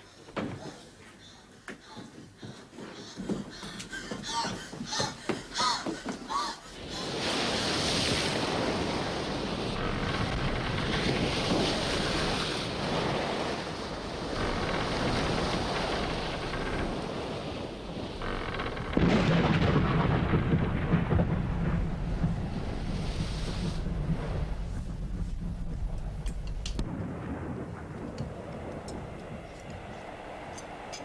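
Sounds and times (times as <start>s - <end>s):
rushing wind and water: 2.4s - 31.0s
deep rumble: 9.4s - 12.6s, 13.8s - 30.3s.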